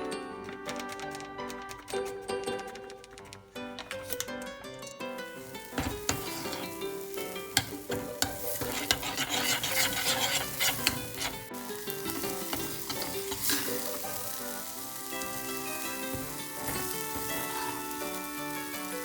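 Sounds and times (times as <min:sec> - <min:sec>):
food sizzling in hot oil: 0:05.1 - 0:19.0
utensil clicking against pot: 0:07.5 - 0:11.5.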